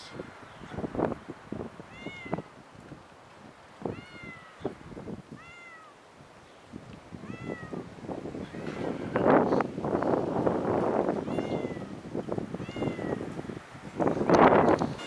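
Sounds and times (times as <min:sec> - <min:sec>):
cat meowing: 0:01.8 - 0:02.5, 0:03.9 - 0:06.0, 0:07.2 - 0:07.9, 0:11.2 - 0:13.3.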